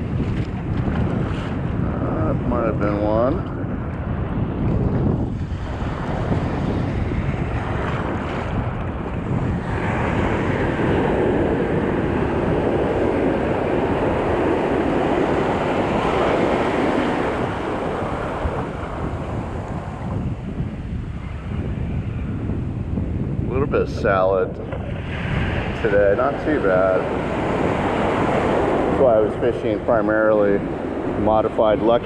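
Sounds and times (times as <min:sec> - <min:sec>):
ocean surf washing on shore: 0:00.0 - 0:32.0
wind buffeting microphone: 0:00.0 - 0:32.0.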